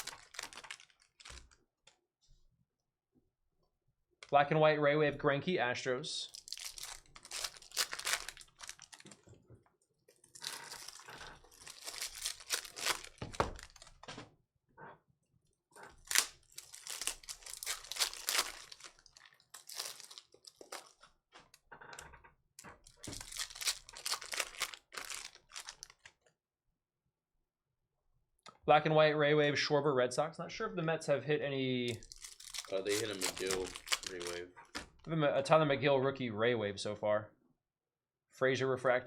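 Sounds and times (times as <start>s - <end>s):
foil wrappers tearing and crinkling: 0.0s - 1.6s, 6.3s - 9.2s, 10.3s - 14.0s, 15.9s - 21.0s, 22.9s - 26.1s, 31.9s - 34.4s.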